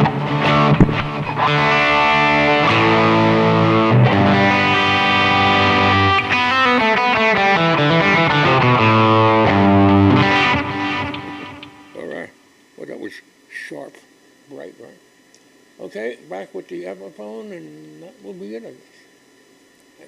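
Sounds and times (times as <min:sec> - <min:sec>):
electric guitar chords ringing: 0:00.0 - 0:12.0.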